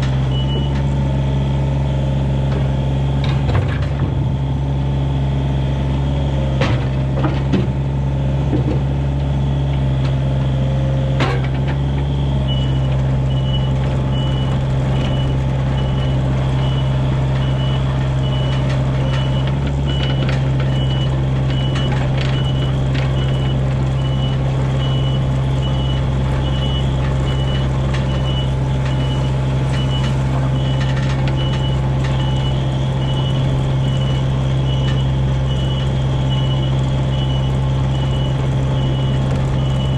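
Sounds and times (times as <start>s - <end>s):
diesel engine running: 0.0s - 39.9s
backup alarm beeping: 0.3s - 0.8s, 12.1s - 39.9s.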